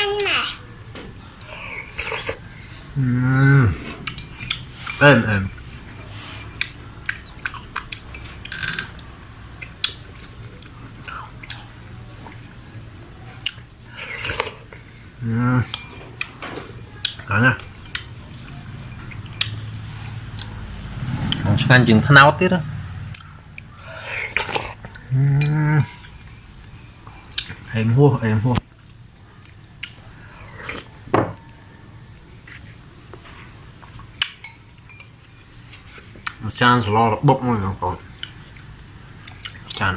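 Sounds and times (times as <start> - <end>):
chewing: 5.6 - 12.5, 28.7 - 31.6, 38.2 - 39.8.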